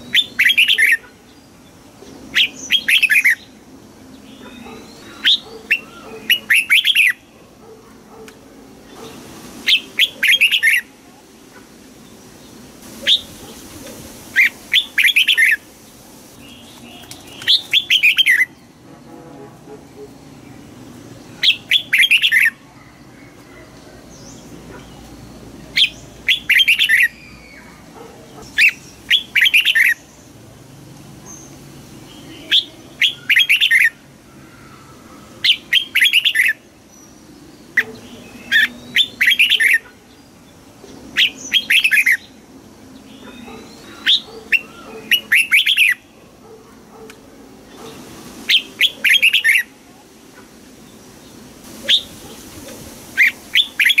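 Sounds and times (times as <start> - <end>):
bulbul singing: 0.0 - 3.6, 9.7 - 11.0, 21.3 - 30.3.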